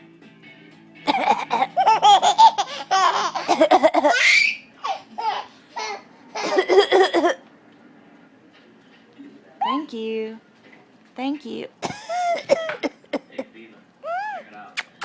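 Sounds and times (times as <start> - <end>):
baby laughing: 1.1 - 6.9, 14.8 - 15.0.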